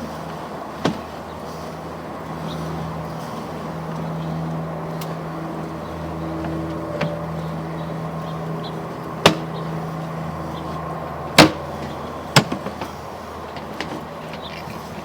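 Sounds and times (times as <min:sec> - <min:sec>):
low mechanical hum: 0:00.0 - 0:15.0
sharp knocks: 0:09.2 - 0:09.6, 0:11.4 - 0:13.0.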